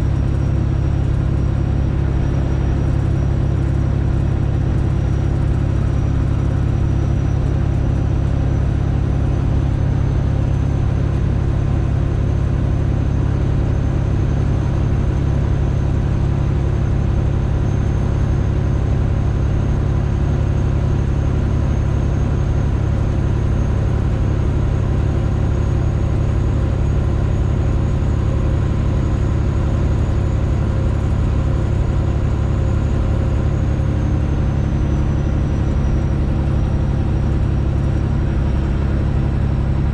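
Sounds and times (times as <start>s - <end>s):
diesel truck exhaust drone: 0.0s - 39.9s.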